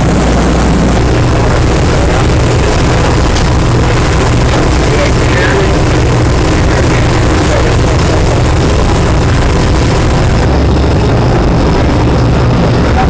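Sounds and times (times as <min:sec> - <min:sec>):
boat engines droning: 0:00.0 - 0:13.0.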